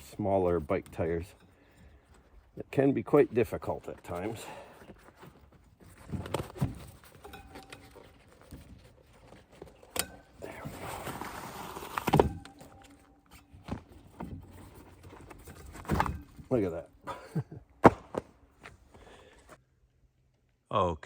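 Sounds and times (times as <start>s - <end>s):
rubber scraping against rim: 2.6s - 16.8s.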